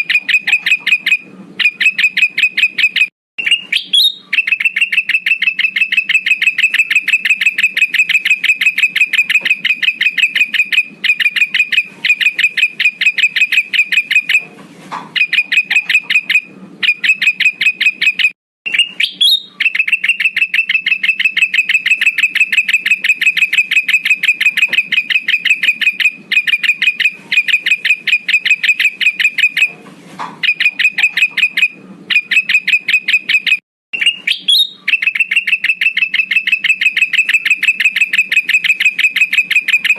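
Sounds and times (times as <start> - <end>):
fast bird trill: 0.0 - 14.5, 15.2 - 29.8, 30.4 - 39.9.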